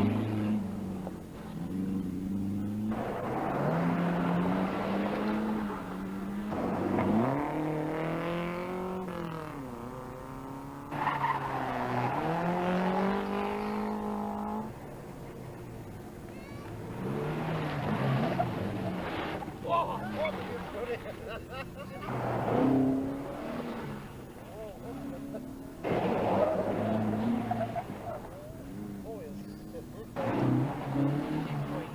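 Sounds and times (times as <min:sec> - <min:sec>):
rally car engine revving: 0:00.0 - 0:31.9.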